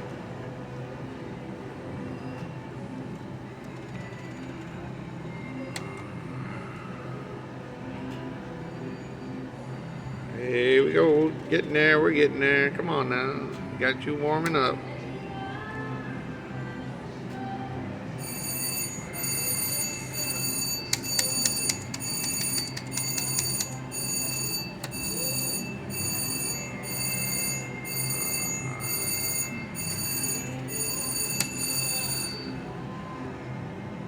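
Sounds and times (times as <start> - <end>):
slot machine bell-like ringing: 18.2 - 32.7.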